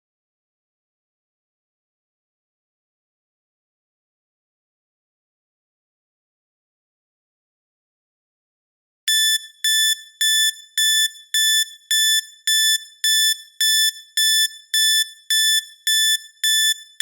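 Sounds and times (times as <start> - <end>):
timer alarm beeping: 9.1 - 17.0.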